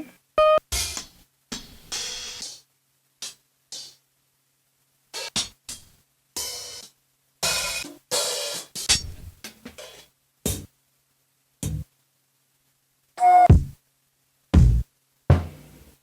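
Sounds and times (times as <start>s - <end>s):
cymbal and hi-hat hits: 0.7s - 2.6s, 5.2s - 10.7s.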